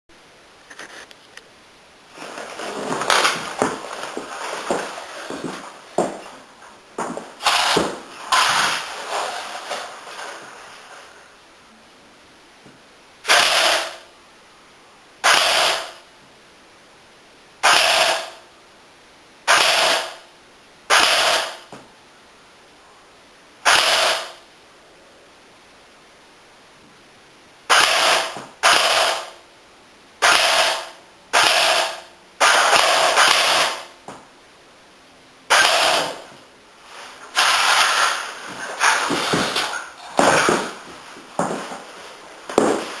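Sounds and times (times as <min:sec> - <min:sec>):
airsoft rifle full-auto bursts: 0:07.4 - 0:08.9, 0:13.3 - 0:14.1, 0:15.2 - 0:16.0, 0:17.6 - 0:18.4, 0:19.5 - 0:20.2, 0:20.9 - 0:21.7, 0:23.7 - 0:24.4, 0:27.7 - 0:29.4, 0:30.2 - 0:33.9, 0:35.5 - 0:36.3, 0:37.3 - 0:39.6.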